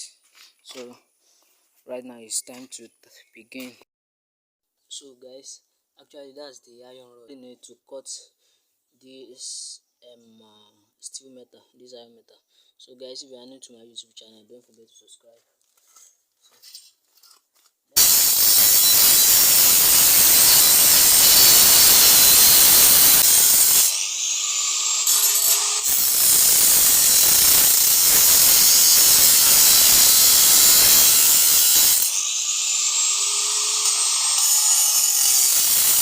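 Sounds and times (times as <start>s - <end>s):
angle grinder cutting metal rod: 18.0s - 36.0s.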